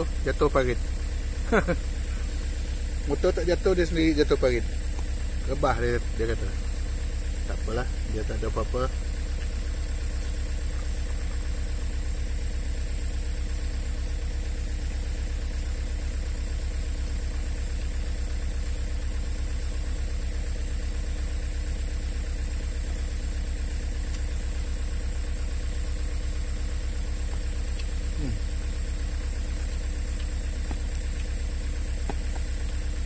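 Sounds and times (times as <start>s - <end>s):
engine idling: 0.0s - 33.0s.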